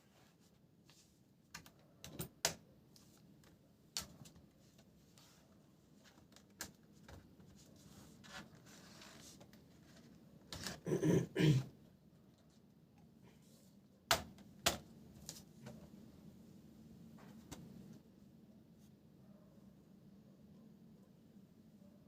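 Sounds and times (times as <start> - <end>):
soft scraping rustle: 7.4 - 10.2.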